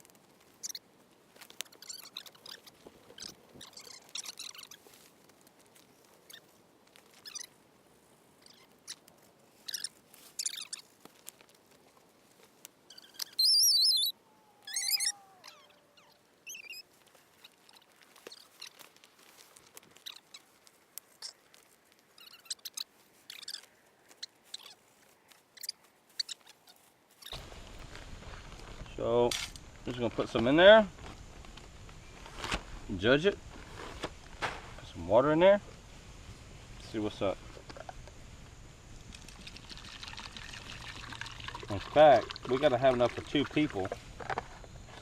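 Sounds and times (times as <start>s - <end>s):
bird warbling trill: 12.9s - 16.8s
birds chirping: 12.9s - 18.8s, 22.2s - 24.8s.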